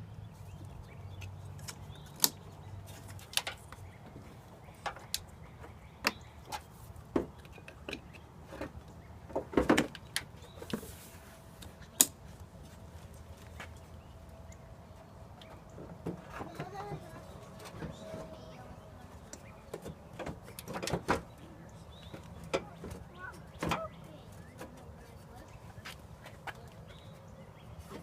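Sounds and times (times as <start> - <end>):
car parts clicking and knocking: 1.1 - 10.8, 19.4 - 23.9.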